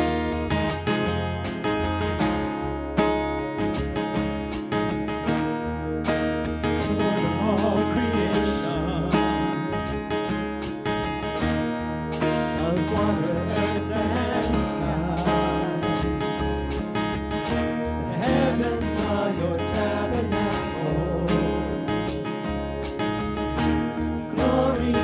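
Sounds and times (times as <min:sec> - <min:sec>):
acoustic guitar: 0:00.0 - 0:25.0
bass: 0:00.0 - 0:25.0
steady drum beat: 0:12.1 - 0:25.0
voices singing: 0:18.0 - 0:22.2, 0:24.3 - 0:25.0.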